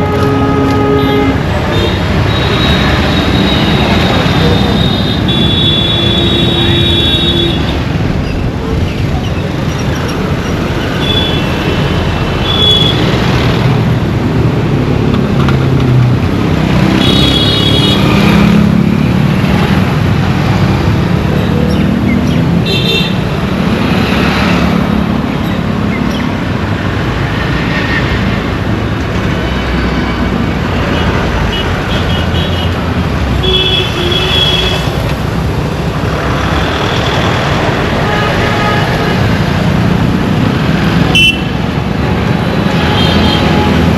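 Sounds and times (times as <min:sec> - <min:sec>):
vehicle horns tooting: 0:00.0 - 0:07.8, 0:10.8 - 0:13.1, 0:31.4 - 0:35.1, 0:36.7 - 0:39.4, 0:41.0 - 0:41.6, 0:42.7 - 0:43.9
road traffic rumble: 0:00.0 - 0:43.9.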